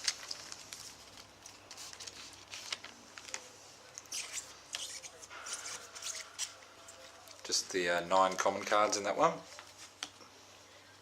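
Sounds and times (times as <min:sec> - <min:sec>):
foil pack crinkling: 0:00.0 - 0:08.8.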